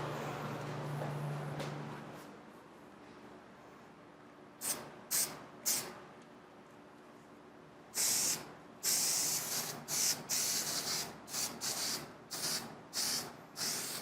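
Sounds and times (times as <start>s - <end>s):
aerosol can spraying in hissing bursts: 4.6s - 5.9s, 8.0s - 14.0s.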